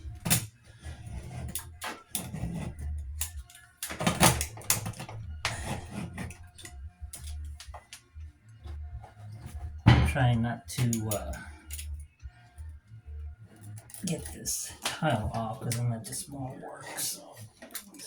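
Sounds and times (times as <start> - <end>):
hand tool scraping caulk: 0.2 - 7.3
sharp clicks and knocks: 1.4 - 8.0.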